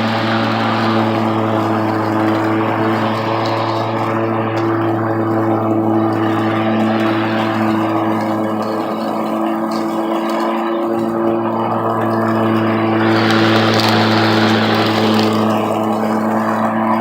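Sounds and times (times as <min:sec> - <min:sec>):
electric lawn mower running: 0:00.0 - 0:17.0.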